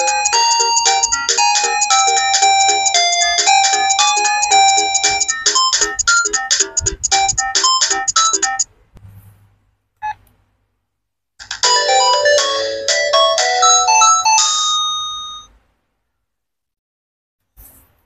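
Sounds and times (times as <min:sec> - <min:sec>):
chiming synthesized tune: 0:00.0 - 0:06.6, 0:11.6 - 0:15.5
phone ringtone melody: 0:00.0 - 0:08.6, 0:11.5 - 0:15.5.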